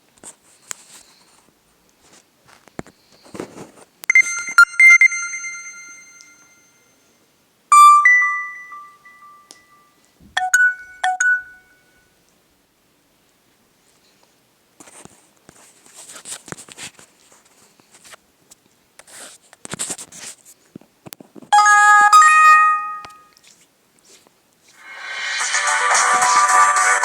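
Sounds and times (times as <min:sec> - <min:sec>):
phone alert chimes: 0:04.1 - 0:06.9, 0:07.7 - 0:09.8, 0:10.4 - 0:11.8, 0:21.6 - 0:23.2.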